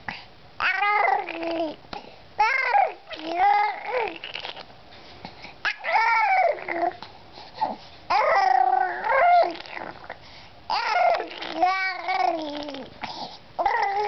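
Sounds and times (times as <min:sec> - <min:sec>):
baby babbling: 0:00.6 - 0:01.8, 0:02.4 - 0:04.5, 0:05.8 - 0:07.0, 0:07.6 - 0:10.0, 0:10.7 - 0:14.0.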